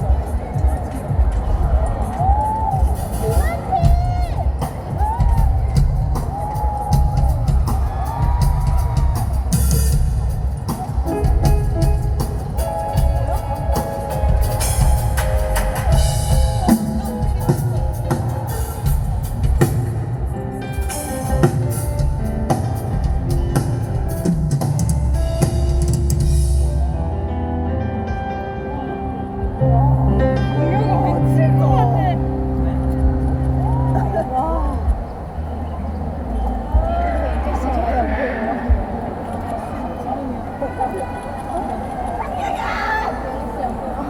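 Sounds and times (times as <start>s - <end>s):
rock band playing live: 2.6s - 35.3s.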